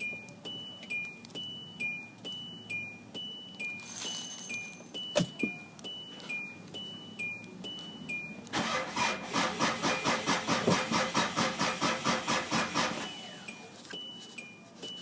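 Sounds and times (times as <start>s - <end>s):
starter cranking engine: 8.5s - 13.2s.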